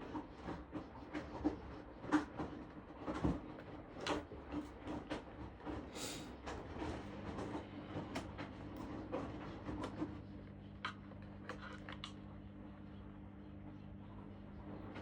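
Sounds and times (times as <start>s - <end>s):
low electrical hum: 2.4s - 15.0s.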